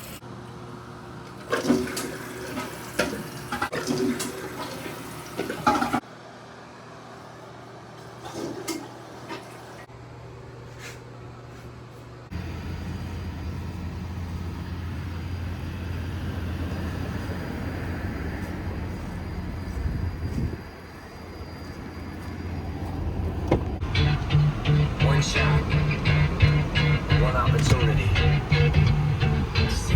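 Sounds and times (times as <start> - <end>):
toilet water rushing: 1.4 - 6.0, 8.2 - 9.9
vehicle rumble: 12.2 - 29.9
steady hum: 18.5 - 29.9.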